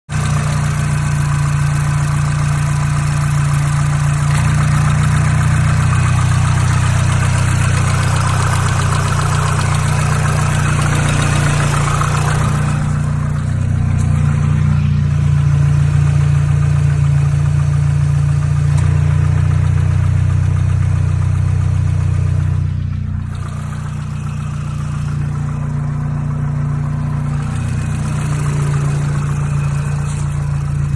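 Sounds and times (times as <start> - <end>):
car engine idling: 0.1 - 30.9.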